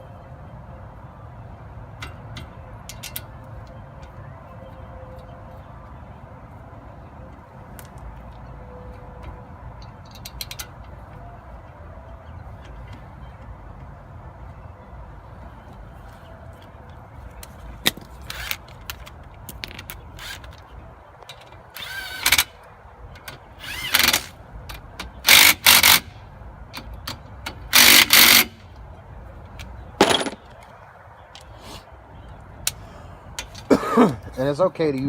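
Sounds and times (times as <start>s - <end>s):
power tool bursts: 23.6s - 24.3s, 25.3s - 26.1s, 27.7s - 28.6s.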